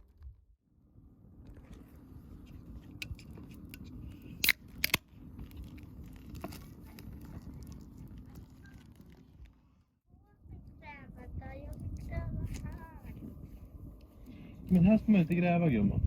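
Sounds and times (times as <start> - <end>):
wood fire burning: 0.9 - 10.0
fire crackles and pops: 2.6 - 9.8.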